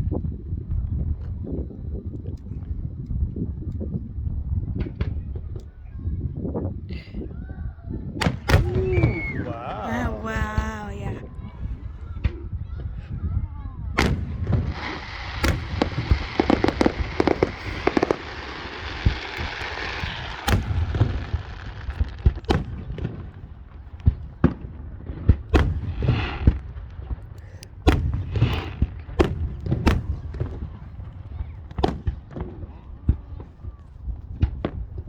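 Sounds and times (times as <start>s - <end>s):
fireworks bangs and booms: 0.0s - 35.0s
fireworks hiss: 14.0s - 22.7s.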